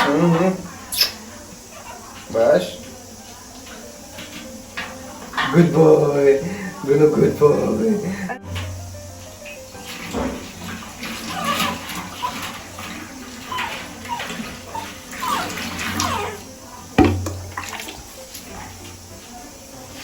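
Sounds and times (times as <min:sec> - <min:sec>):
water running and splashing: 0:00.1 - 0:20.0
puppy whimpering: 0:01.0 - 0:02.2, 0:11.0 - 0:16.6
sharp knock: 0:17.0 - 0:17.6.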